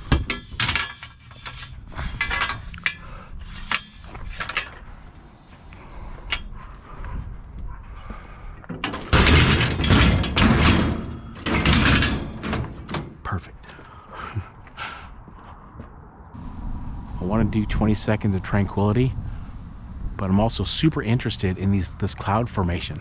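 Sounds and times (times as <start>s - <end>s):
metal clanking and rattling: 0.0s - 6.6s, 8.6s - 13.3s.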